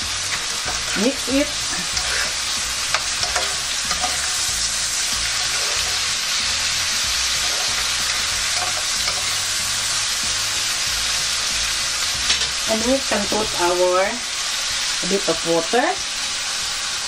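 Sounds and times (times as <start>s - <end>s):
food sizzling in oil: 0.0s - 17.0s
utensil clicking against pan: 1.8s - 4.4s, 7.3s - 9.4s.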